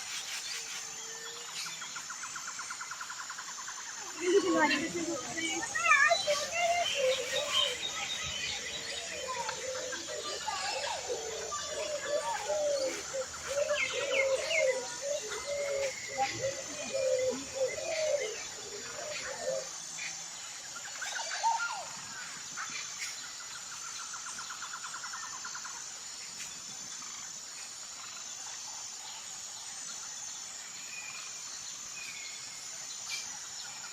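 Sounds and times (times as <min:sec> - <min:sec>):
bird calls: 0:04.0 - 0:23.3.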